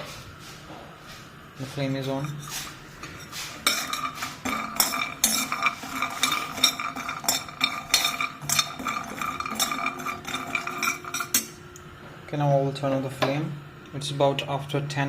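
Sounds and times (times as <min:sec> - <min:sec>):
utensil scraping metal pan: 0:02.0 - 0:11.6.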